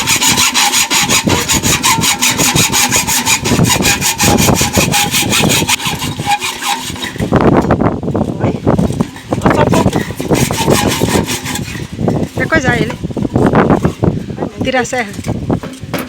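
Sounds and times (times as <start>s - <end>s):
hand saw cutting metal: 0.0s - 7.5s, 9.4s - 12.5s
rough low scraping: 0.0s - 16.0s.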